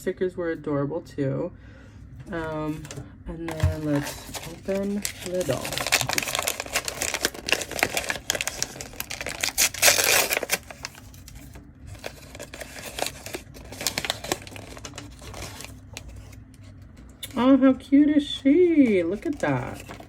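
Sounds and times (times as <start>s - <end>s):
packaging crinkling and rustling: 2.3s - 17.4s, 18.4s - 20.0s
packaging tearing: 2.8s - 16.5s, 19.2s - 20.0s.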